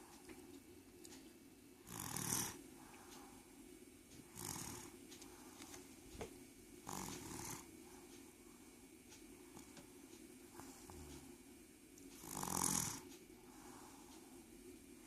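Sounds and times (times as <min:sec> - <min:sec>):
soft breathy snoring: 0:01.8 - 0:03.5, 0:04.2 - 0:05.8, 0:06.8 - 0:08.1, 0:10.5 - 0:11.4, 0:12.2 - 0:14.5.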